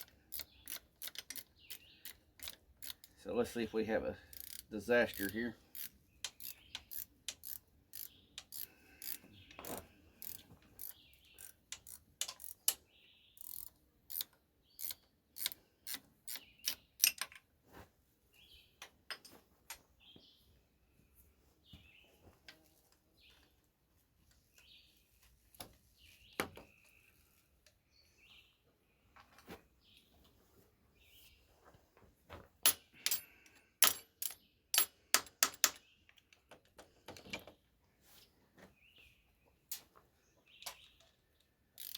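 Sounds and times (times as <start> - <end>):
ratchet wrench clicking: 0.0 - 3.1, 4.3 - 9.6, 10.2 - 12.8, 13.4 - 17.2.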